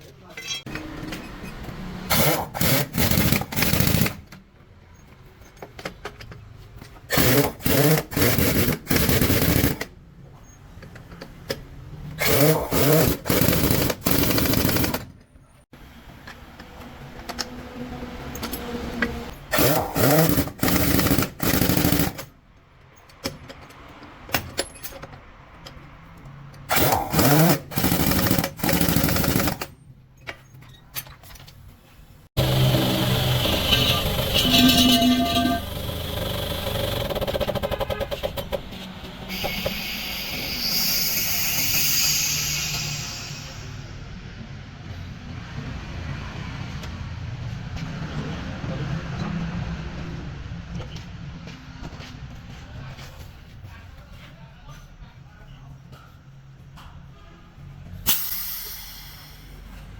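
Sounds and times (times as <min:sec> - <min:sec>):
pneumatic impact wrench rattling: 0:02.1 - 0:04.3, 0:07.1 - 0:09.9, 0:12.2 - 0:15.1, 0:19.4 - 0:22.3, 0:26.6 - 0:29.7, 0:32.4 - 0:43.9, 0:58.1 - 0:59.7.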